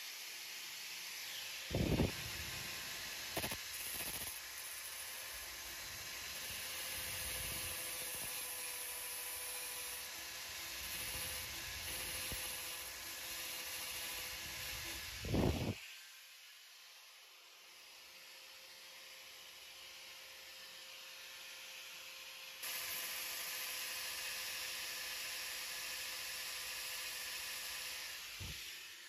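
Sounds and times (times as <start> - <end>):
air grinder hissing: 1.2 - 16.0.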